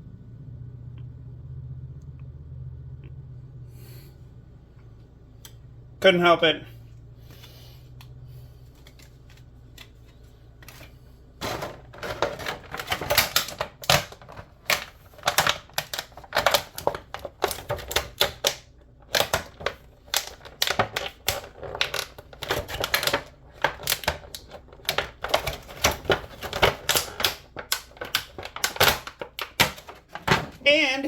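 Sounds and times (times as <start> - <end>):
hard plastic packaging clicking: 8.8 - 30.6.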